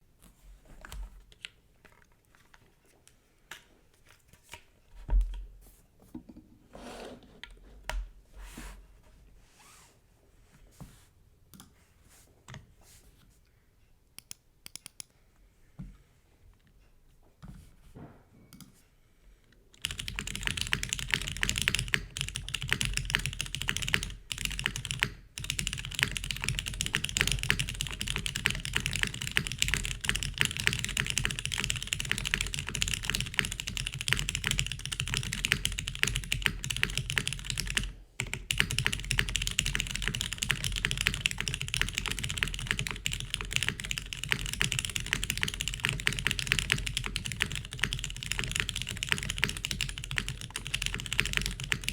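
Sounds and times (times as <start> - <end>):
fast typing on mechanical keyboard: 19.8 - 51.9.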